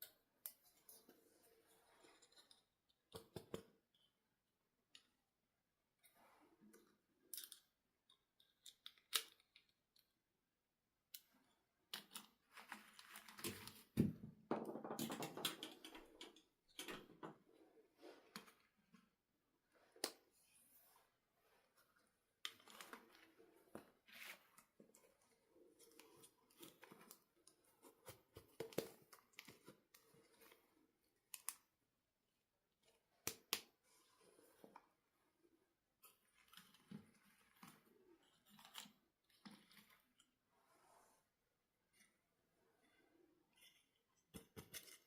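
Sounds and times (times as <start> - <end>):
clicks of small objects handled: 6.7 - 10.2, 11.1 - 14.1, 31.3 - 31.7.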